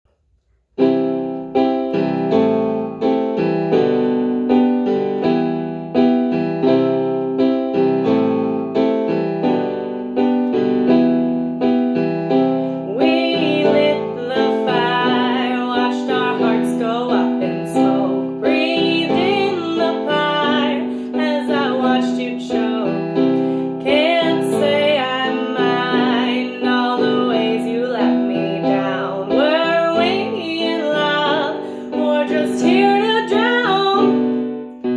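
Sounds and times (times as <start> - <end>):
solo piano chords: 0.8 - 34.9
woman singing: 12.9 - 34.4.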